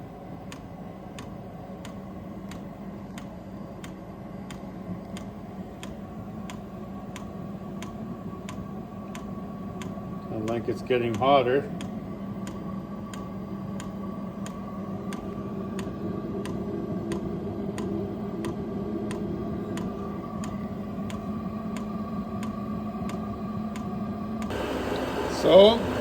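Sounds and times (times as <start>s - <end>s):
blower humming: 9.5s - 26.0s
fuel pump clicking: 24.4s - 26.0s.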